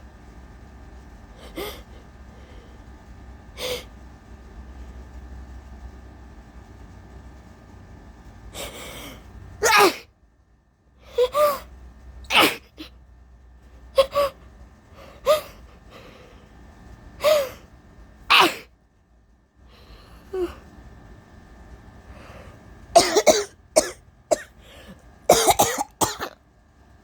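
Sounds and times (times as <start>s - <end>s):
woman sneezing: 9.6s - 10.0s, 12.3s - 12.8s, 18.3s - 18.7s
woman gasping: 24.6s - 25.0s.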